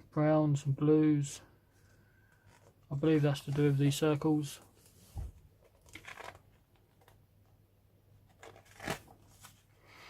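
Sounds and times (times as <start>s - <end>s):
book pages rustling: 1.8s - 7.2s, 8.3s - 9.7s.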